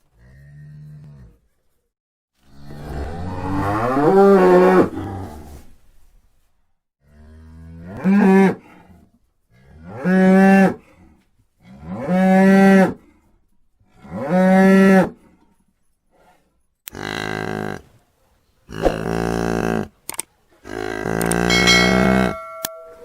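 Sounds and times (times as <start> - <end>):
cow mooing: 2.6 - 5.3.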